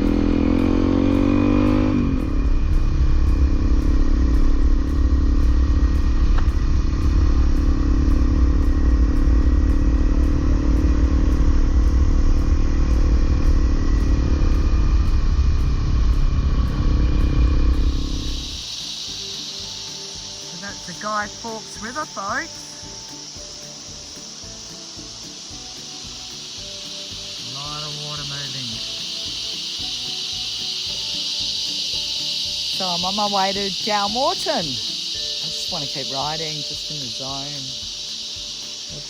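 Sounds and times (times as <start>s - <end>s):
motorcycle engine running: 0.0s - 39.0s.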